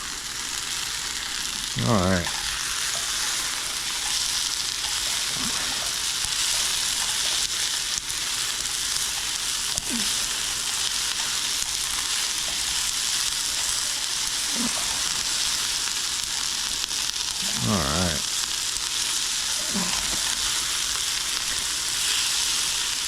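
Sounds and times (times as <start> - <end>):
vegetables sizzling in a pan: 0.0 - 23.0.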